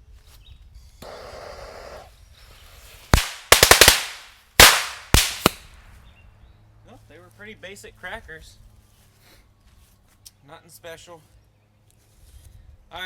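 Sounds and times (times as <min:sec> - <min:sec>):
firecracker bangs: 0:03.1 - 0:05.8.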